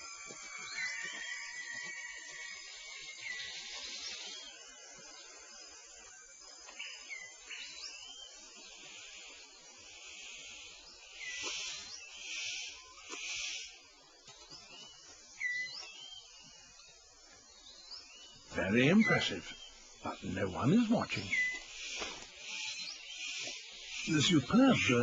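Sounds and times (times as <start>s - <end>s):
birds whistling: 14.5s - 17.0s, 17.7s - 25.0s
steady high hiss: 15.9s - 25.0s
bursts of hissing noise: 18.5s - 25.0s.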